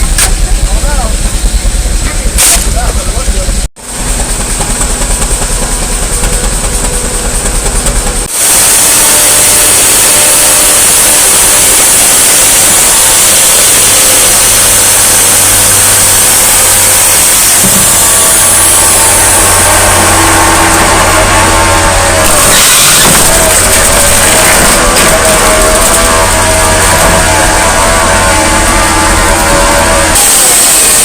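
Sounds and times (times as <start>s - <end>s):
steam traction engine pulsing: 0.0s - 31.0s
loud rushing steam hiss: 7.2s - 31.0s.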